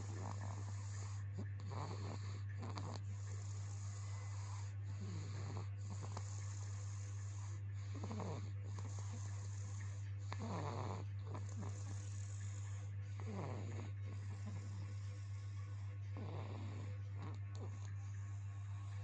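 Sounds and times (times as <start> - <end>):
person snoring: 0.0 - 19.0
steady low hum: 0.0 - 19.0.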